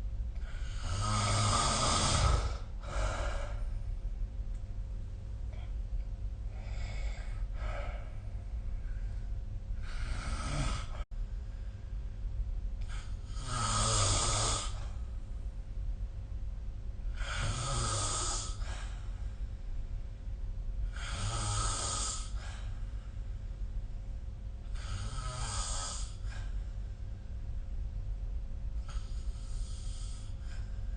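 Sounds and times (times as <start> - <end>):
steady low hum: 0.0 - 30.9
person snoring: 0.4 - 3.6, 9.8 - 11.0, 12.8 - 14.9, 17.1 - 18.8, 20.9 - 22.5, 24.7 - 26.4
soft breaths: 2.1 - 4.1, 5.4 - 12.2, 24.6 - 27.9, 28.8 - 30.9.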